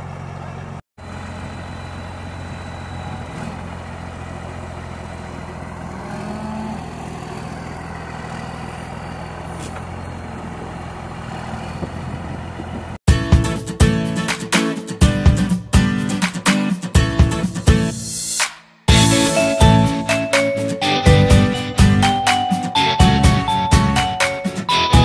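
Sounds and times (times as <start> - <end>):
vehicle engine running: 0.0 - 13.9.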